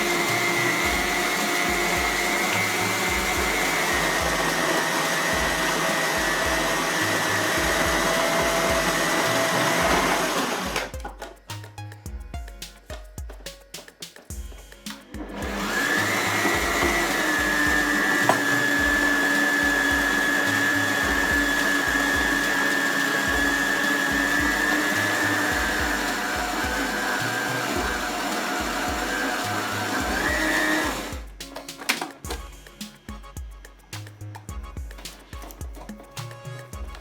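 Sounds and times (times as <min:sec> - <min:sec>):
food processor motor whining: 0:00.0 - 0:11.2, 0:15.0 - 0:32.5.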